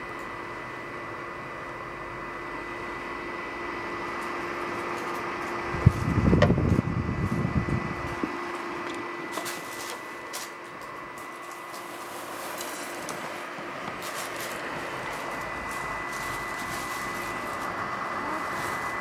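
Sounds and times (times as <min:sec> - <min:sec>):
dehumidifier fan hum: 0:00.0 - 0:19.0
faint high whine: 0:00.0 - 0:19.0
low rumbling and knocking: 0:05.8 - 0:08.4.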